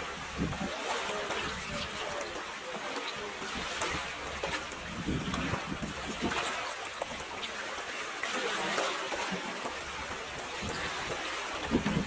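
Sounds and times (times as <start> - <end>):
water rushing and splashing: 0.0 - 12.0.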